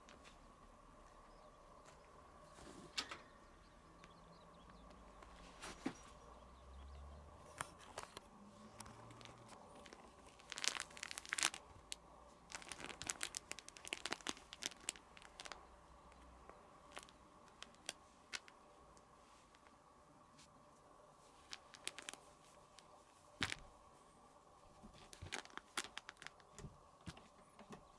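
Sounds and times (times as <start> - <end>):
crinkly toy rustling: 7.3 - 19.8, 21.1 - 27.4.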